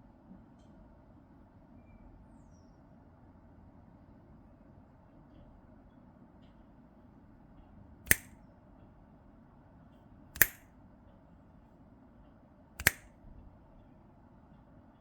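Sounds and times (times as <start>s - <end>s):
sharp ringing clicks: 10.4s - 10.6s, 12.8s - 13.1s.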